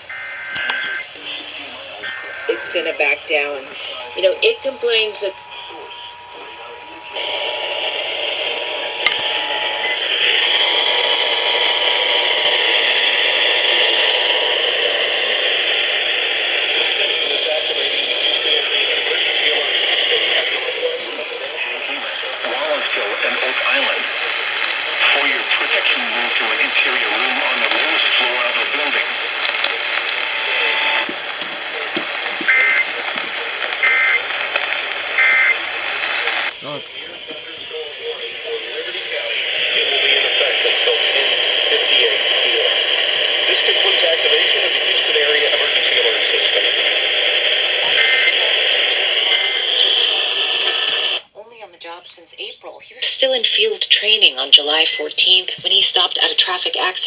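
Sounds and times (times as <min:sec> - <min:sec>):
faint constant tone: 0:00.0 - 0:42.9
radio static hiss: 0:00.0 - 0:57.0.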